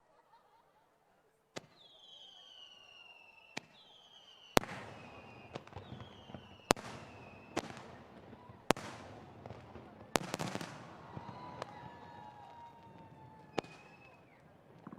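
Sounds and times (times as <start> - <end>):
firework whistles falling in pitch: 1.7 - 7.8, 10.4 - 14.5
firework crackling: 4.6 - 14.9
firework shells bursting: 4.6 - 14.9.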